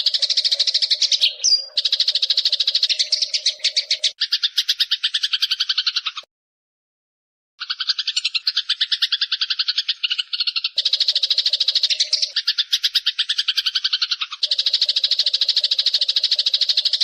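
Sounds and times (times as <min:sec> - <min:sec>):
sparrow chattering: 0:00.0 - 0:06.3, 0:07.6 - 0:17.0.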